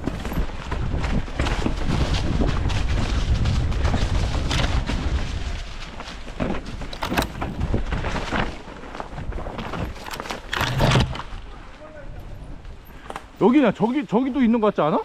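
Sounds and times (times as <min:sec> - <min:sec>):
bike clicks and rattles: 0:00.0 - 0:02.2, 0:06.8 - 0:11.5
wind buffeting microphone: 0:00.0 - 0:06.0
tyres rumbling on trail: 0:00.0 - 0:11.8.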